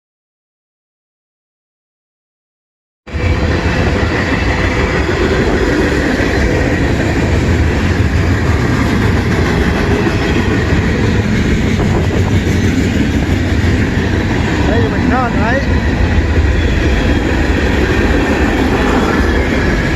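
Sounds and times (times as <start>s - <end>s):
freight train rolling past: 3.1s - 19.9s.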